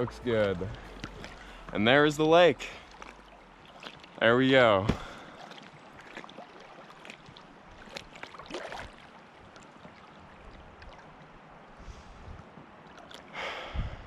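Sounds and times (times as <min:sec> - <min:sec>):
small water splashes: 0:00.0 - 0:11.8, 0:12.6 - 0:13.4
water lapping and trickling: 0:00.0 - 0:14.0.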